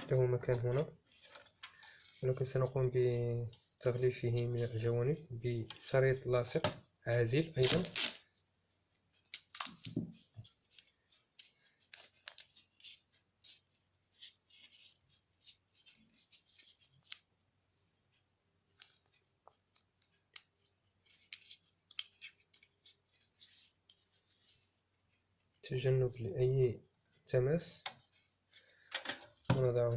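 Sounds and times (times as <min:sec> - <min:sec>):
tape being cut and wrapped: 0:07.6 - 0:08.3.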